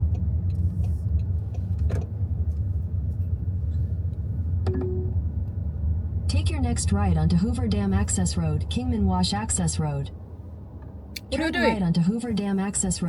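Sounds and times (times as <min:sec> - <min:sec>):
engine and road rumble: 0:00.0 - 0:13.0
brief tone: 0:04.7 - 0:05.2.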